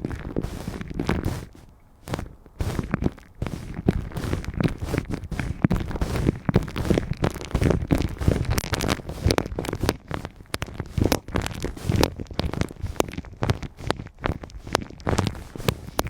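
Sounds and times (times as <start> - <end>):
hands rubbing microphone: 0.0 - 16.0.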